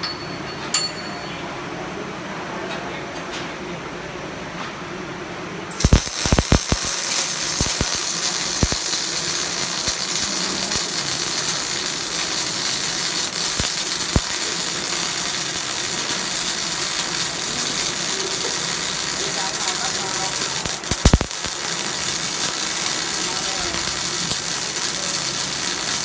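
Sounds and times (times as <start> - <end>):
welding arc hissing and popping: 5.7 - 26.0.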